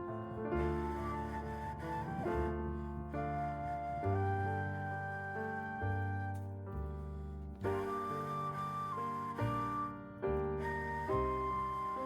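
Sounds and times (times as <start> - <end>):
soft instrumental music: 0.0 - 12.0.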